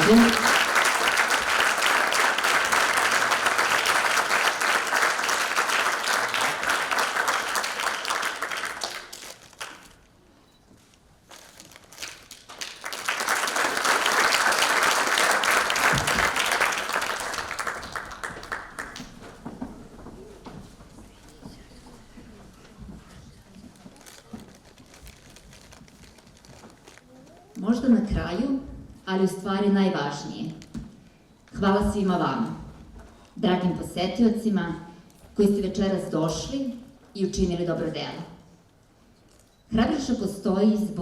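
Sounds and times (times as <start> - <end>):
audience applauding: 0.0 - 10.0, 11.5 - 19.4.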